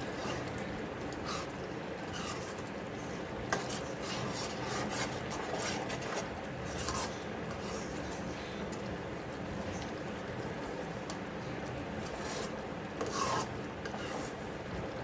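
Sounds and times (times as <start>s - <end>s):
spatula scraping a pan: 0.0s - 8.2s, 12.0s - 14.5s.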